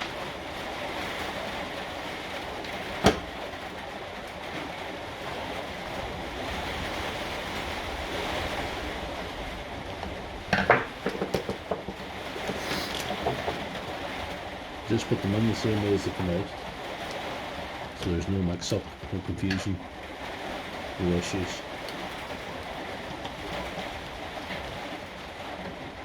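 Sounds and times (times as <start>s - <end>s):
tools clicking and knocking: 10.6s - 13.7s
background hiss: 11.9s - 22.2s.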